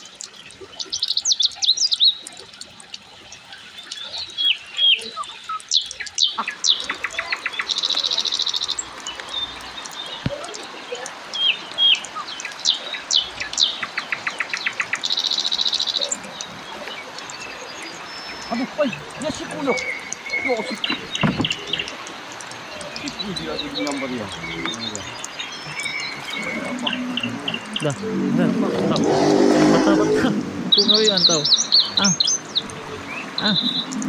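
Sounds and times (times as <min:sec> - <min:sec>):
bird ticking trills: 0:00.0 - 0:28.0, 0:28.8 - 0:34.0
birds chirping and whistling: 0:03.8 - 0:10.6, 0:11.3 - 0:28.0, 0:30.7 - 0:34.0.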